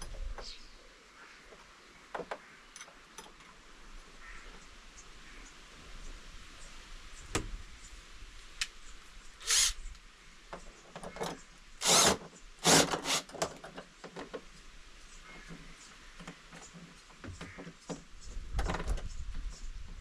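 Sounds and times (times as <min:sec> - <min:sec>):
power screwdriver driving screws: 0:09.4 - 0:09.8, 0:11.8 - 0:13.4.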